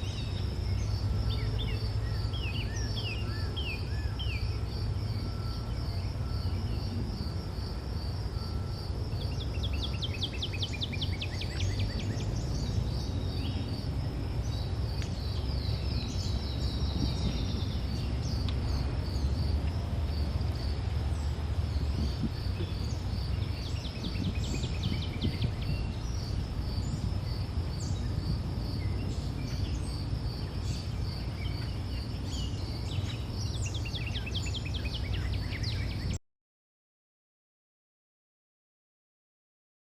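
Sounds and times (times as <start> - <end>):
insects trilling: 0.0 - 36.1
low steady rumble: 0.0 - 36.2.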